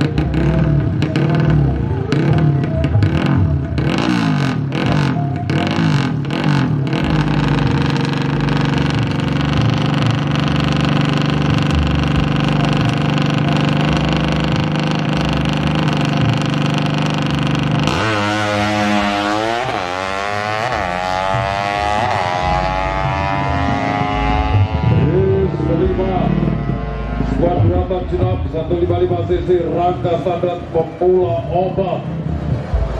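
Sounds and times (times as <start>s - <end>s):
motorcycle engine revving: 0.0s - 32.9s.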